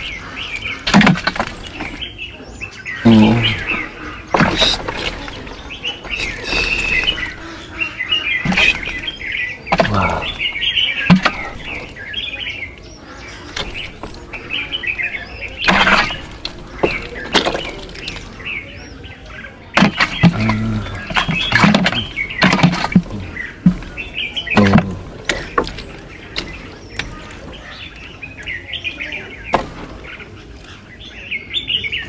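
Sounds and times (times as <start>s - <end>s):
sharp knocks and handling noises: 0.0s - 2.1s, 4.2s - 7.5s, 8.4s - 12.0s, 13.5s - 18.5s, 19.7s - 28.6s, 29.4s - 30.7s
small birds chirping: 0.0s - 32.0s.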